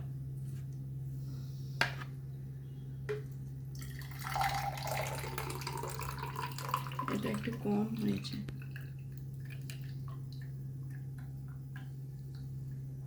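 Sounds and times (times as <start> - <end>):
steady low hum: 0.0 - 13.0
juice trickling into container: 3.7 - 11.6.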